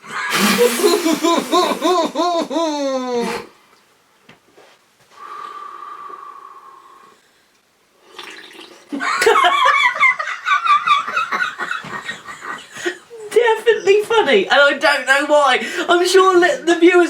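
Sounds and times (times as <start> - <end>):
gurgling breath through soda: 0.1 - 2.0
loud laughter: 0.1 - 3.1, 9.0 - 12.8.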